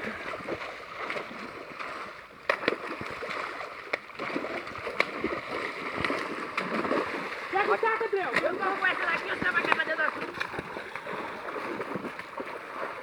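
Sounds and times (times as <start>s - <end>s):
rush of water: 0.0s - 13.0s
water splashing and sloshing: 0.0s - 13.0s.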